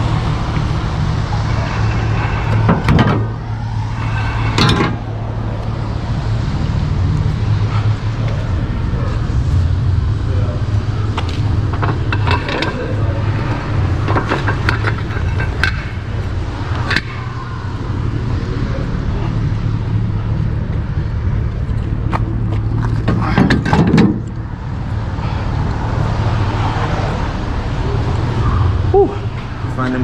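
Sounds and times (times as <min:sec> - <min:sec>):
low engine hum: 0:00.0 - 0:30.0
scrap metal clanking: 0:00.4 - 0:05.5, 0:11.1 - 0:17.7.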